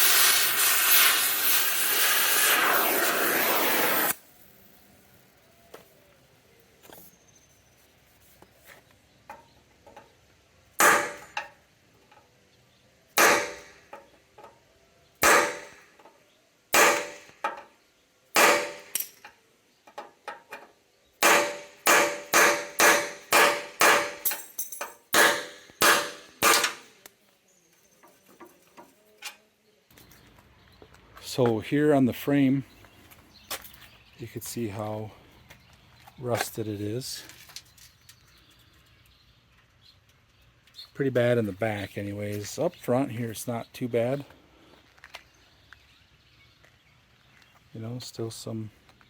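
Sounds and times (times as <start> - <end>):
hammer striking metal: 10.8 - 11.5, 13.2 - 13.8, 15.2 - 15.8, 16.8 - 17.6, 18.4 - 19.1, 21.2 - 26.9.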